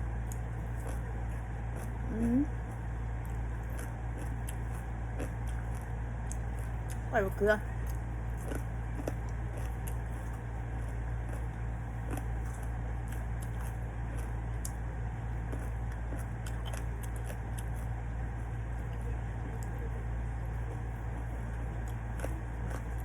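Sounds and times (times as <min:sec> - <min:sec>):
air conditioner humming: 0:00.0 - 0:23.0
chewing with small clicks: 0:00.1 - 0:02.1, 0:02.7 - 0:07.1, 0:07.7 - 0:23.0.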